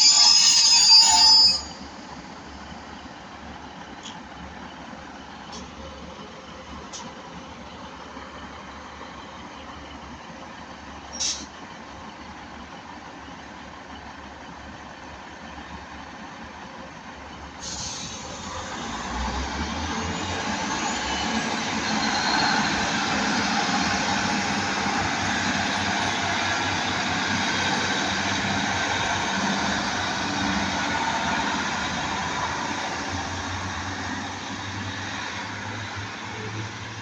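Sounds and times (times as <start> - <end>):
train wheels rushing on rail: 17.5 - 37.0.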